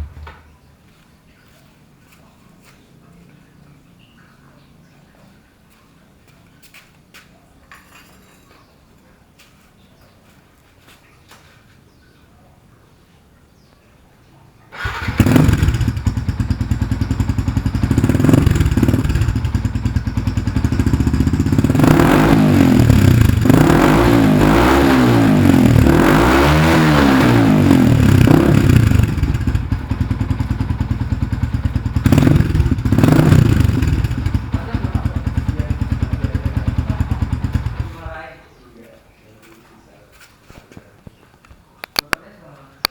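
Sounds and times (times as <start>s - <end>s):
motorcycle engine revving: 14.7s - 38.2s.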